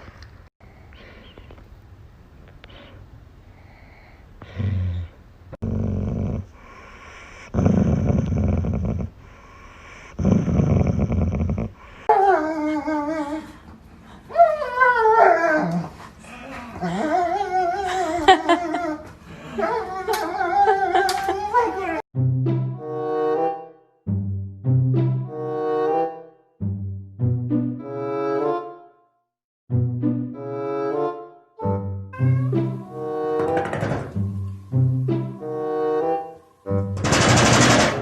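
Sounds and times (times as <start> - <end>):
dog growling: 4.7 - 6.6, 7.4 - 9.2, 10.1 - 11.8.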